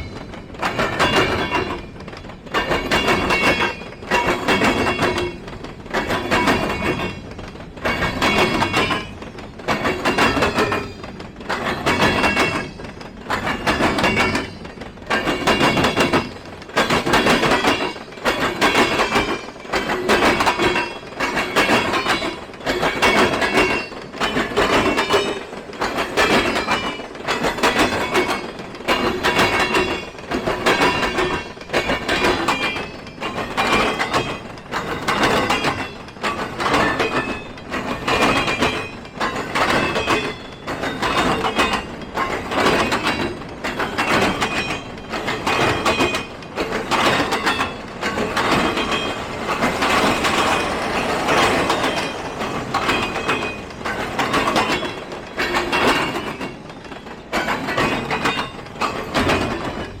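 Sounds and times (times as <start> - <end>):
train wheels clacking over rail joints: 0.0 - 60.0.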